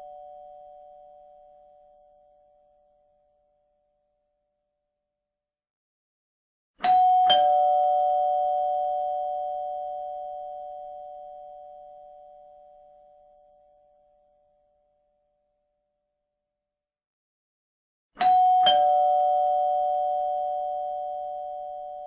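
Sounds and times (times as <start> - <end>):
two-tone doorbell chime: 6.9 - 11.7, 18.2 - 22.0.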